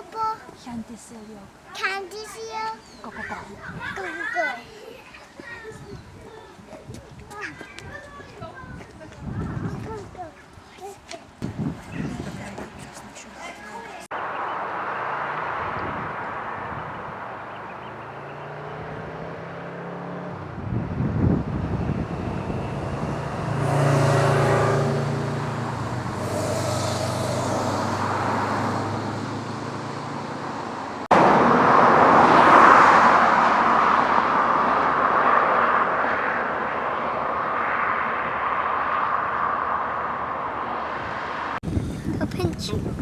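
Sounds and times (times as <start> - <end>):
loud rushing noise: 20.4 - 41.8.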